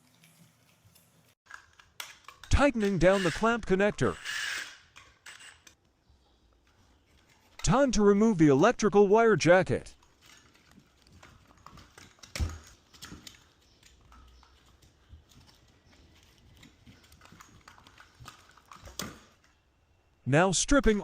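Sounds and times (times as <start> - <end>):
tool and cable clicks and knocks: 10.1 - 15.7.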